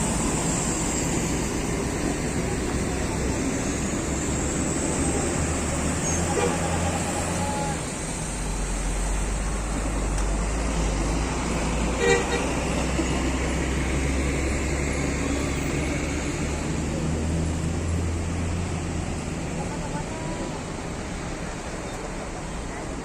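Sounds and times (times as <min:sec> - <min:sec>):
bus engines idling: 0:00.0 - 0:23.0
traffic noise: 0:00.0 - 0:23.0
horn toot: 0:06.0 - 0:07.9.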